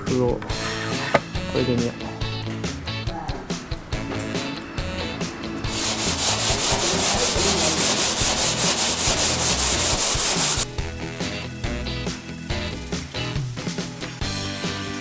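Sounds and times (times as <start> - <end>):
sanding on steel: 5.7 - 10.6.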